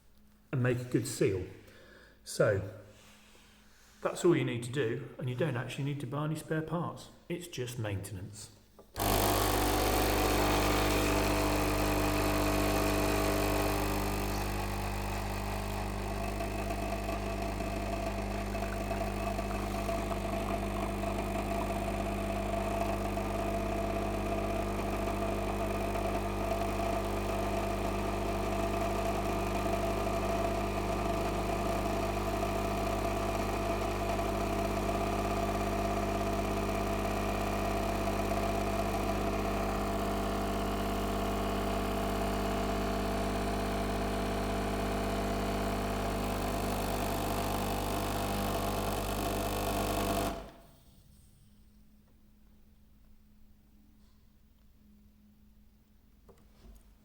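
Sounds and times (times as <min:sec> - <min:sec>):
espresso machine pump buzzing: 0:08.9 - 0:50.6.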